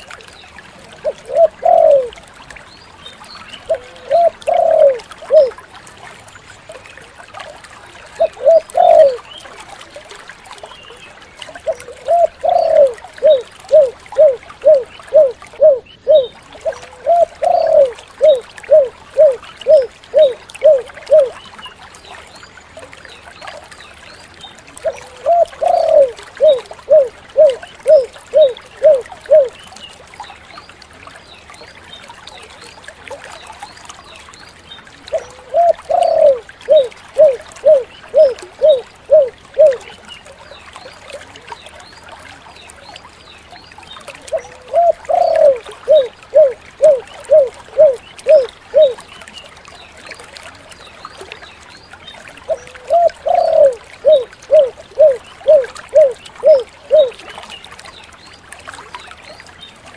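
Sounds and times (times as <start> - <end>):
dove cooing: 1.0 - 2.2, 3.7 - 5.6, 8.2 - 9.2, 11.6 - 21.4, 24.8 - 29.6, 35.1 - 39.8, 44.3 - 49.0, 52.5 - 57.2.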